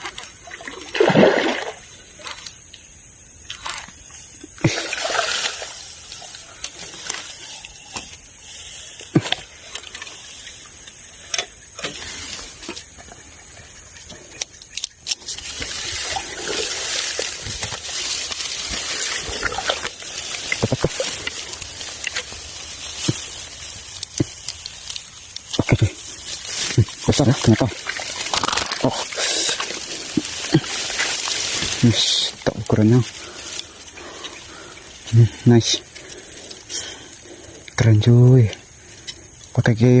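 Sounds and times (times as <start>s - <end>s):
water splashing and sloshing: 0.0s - 2.7s, 3.4s - 8.2s, 9.0s - 37.4s
rustling: 15.0s - 37.3s.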